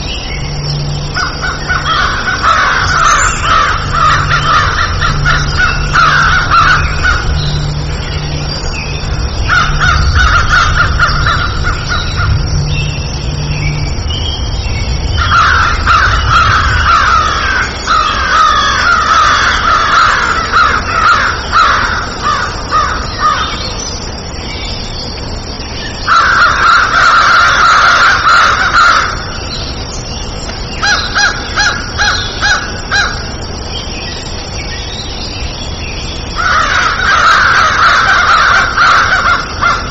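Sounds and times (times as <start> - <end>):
crows cawing: 1.0 - 12.5, 15.2 - 23.8, 26.0 - 29.5, 30.8 - 33.4, 36.3 - 39.9.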